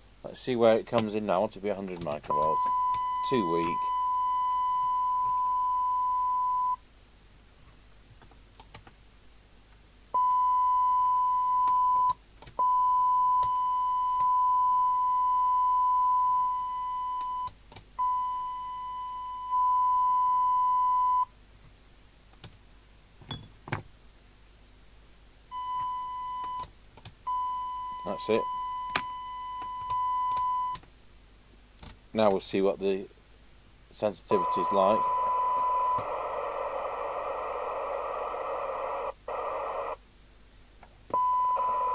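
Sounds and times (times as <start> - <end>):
steady test tone from loudspeaker: 2.3 - 6.8, 27.3 - 30.7, 34.3 - 40.0, 41.1 - 41.9.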